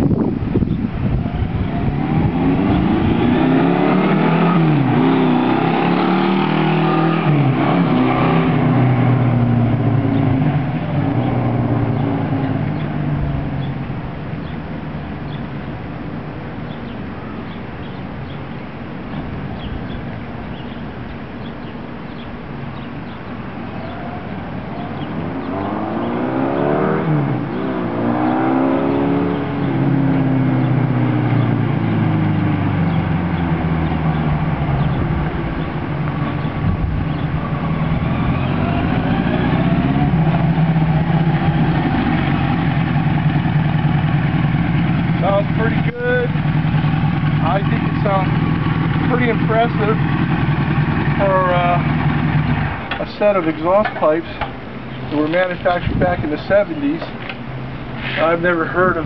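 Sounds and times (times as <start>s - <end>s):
wind noise on microphone: 0.0s - 5.2s, 7.1s - 26.0s, 27.0s - 43.6s, 54.4s - 59.0s
motorcycle engine revving: 0.0s - 15.5s, 23.8s - 59.0s.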